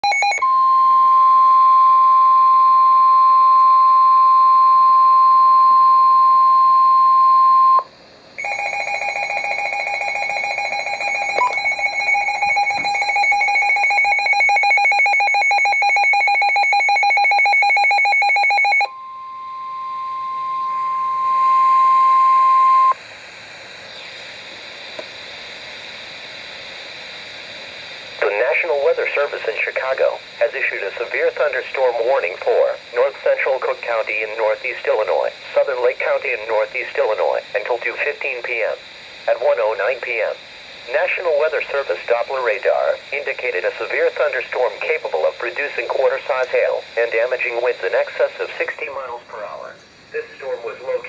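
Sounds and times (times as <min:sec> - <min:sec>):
steady warning alarm tone: 0:00.0 - 0:23.0, 0:28.2 - 0:49.1
radio hiss: 0:22.7 - 0:51.0.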